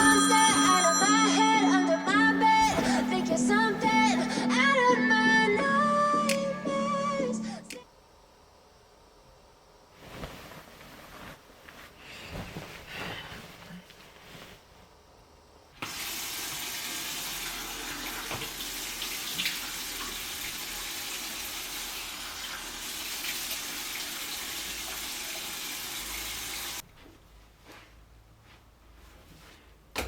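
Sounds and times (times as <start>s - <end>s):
tap water running: 15.8s - 26.8s.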